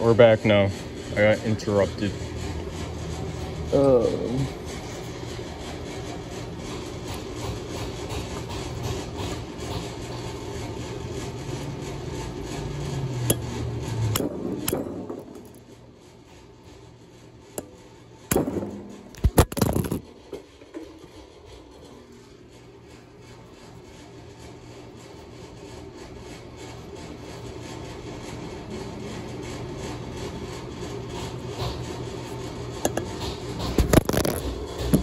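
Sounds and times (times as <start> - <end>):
hammer striking metal: 13.2 - 15.2.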